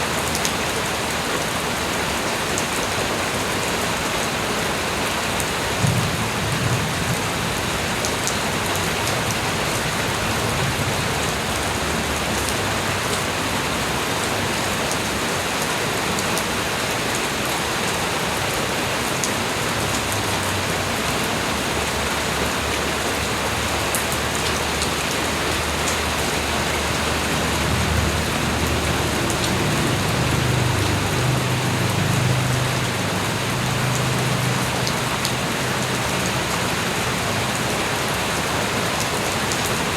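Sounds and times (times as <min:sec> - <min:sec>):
light rain falling: 0:00.0 - 0:39.9.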